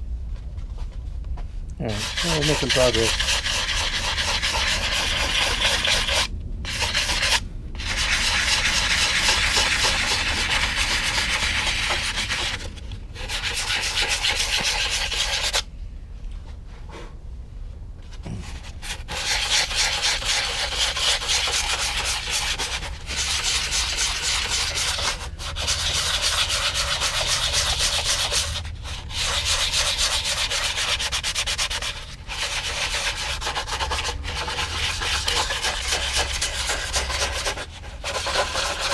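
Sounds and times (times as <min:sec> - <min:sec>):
sandpaper rubbing by hand: 0:01.9 - 0:15.6, 0:18.5 - 0:38.9.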